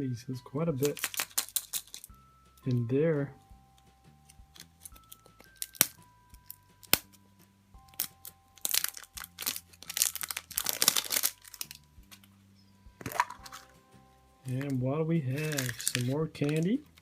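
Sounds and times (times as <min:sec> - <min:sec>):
soft background music: 0:00.0 - 0:17.0
wrapper crinkling and tearing: 0:00.8 - 0:02.2, 0:04.3 - 0:07.1, 0:07.8 - 0:12.3, 0:13.0 - 0:13.8, 0:14.5 - 0:17.0
packaging clicks: 0:00.8 - 0:02.8, 0:04.3 - 0:07.2, 0:07.8 - 0:12.3, 0:13.0 - 0:13.7, 0:14.5 - 0:17.0.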